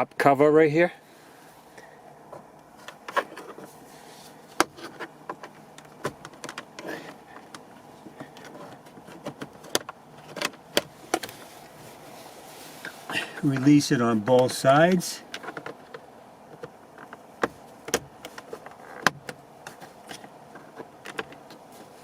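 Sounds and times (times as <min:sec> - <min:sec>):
plastic trim clicks and creaks: 0:04.6 - 0:11.3, 0:17.9 - 0:21.6.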